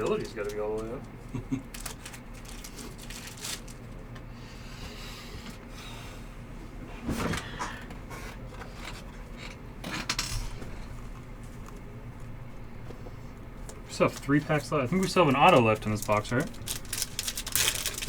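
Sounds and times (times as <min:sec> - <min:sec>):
low steady hum: 0:00.0 - 0:18.0
cards rustling and scraping: 0:13.7 - 0:18.0.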